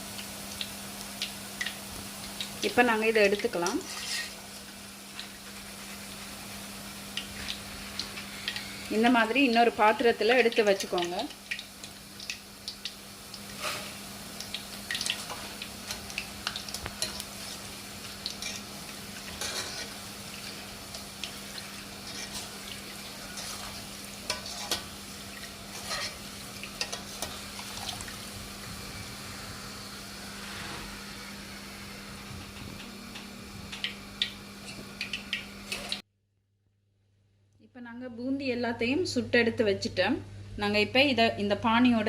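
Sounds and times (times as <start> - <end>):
batter frying in hot oil: 0.0 - 36.0
metal ladle scraping a pan: 3.7 - 4.4, 18.4 - 18.7, 19.3 - 20.0, 22.0 - 24.9, 25.7 - 27.8.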